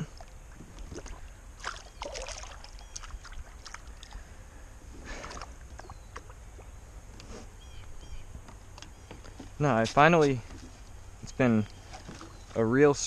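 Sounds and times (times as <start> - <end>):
water swish: 0.0 - 4.3
boat engine rumble: 0.0 - 13.0.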